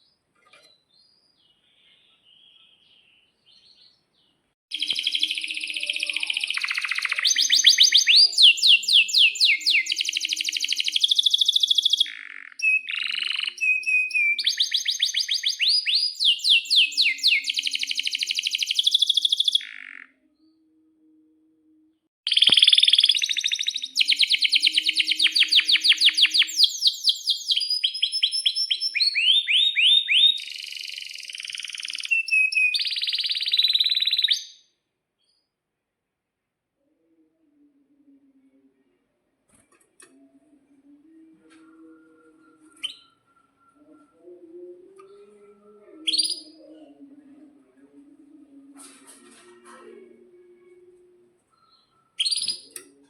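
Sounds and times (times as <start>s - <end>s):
canary singing trills: 4.7s - 20.2s, 22.3s - 34.6s.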